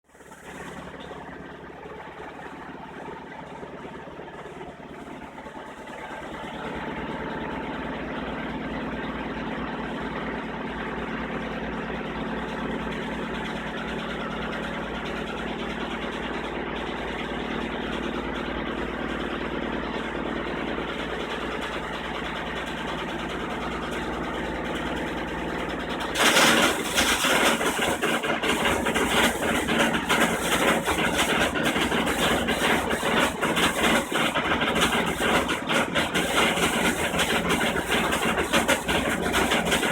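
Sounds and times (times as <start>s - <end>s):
washing machine humming: 18.5s - 39.9s.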